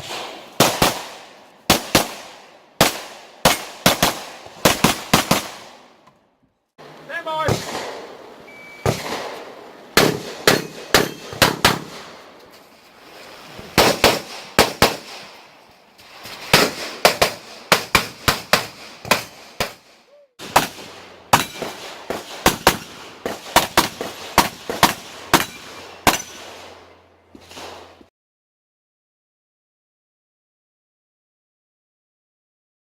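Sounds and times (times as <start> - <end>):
pistol fired rapidly: 0.1 - 5.8, 8.9 - 9.4, 10.0 - 12.0, 13.8 - 15.2, 16.6 - 26.8.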